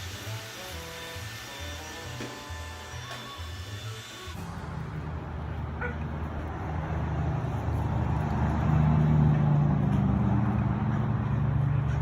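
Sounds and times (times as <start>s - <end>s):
vehicle running hum: 4.3s - 12.0s.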